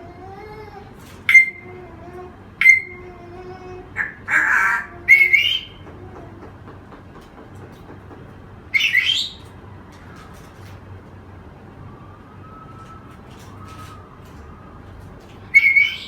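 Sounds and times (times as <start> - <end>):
parrot whistle-like calls: 1.3 - 1.7, 2.6 - 3.0, 4.0 - 5.8, 8.7 - 9.5, 15.5 - 16.0
parrot harsh rising call: 4.0 - 5.7, 15.5 - 16.0.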